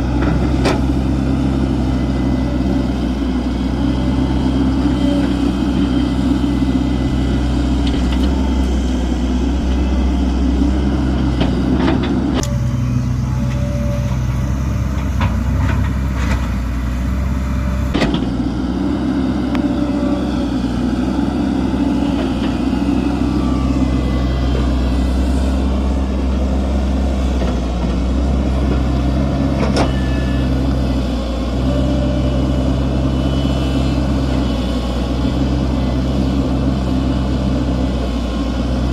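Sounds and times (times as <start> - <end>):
excavator diesel engine running: 0.0 - 38.9.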